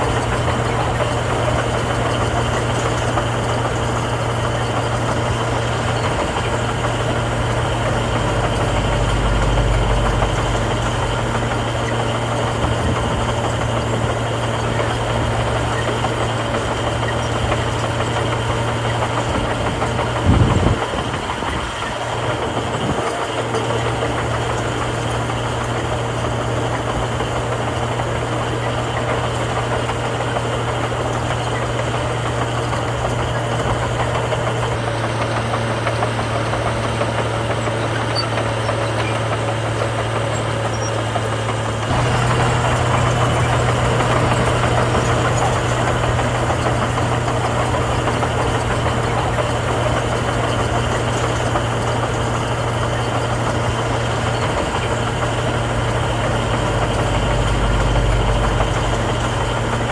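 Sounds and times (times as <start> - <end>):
heavy diesel machinery engines: 0.0 - 59.9.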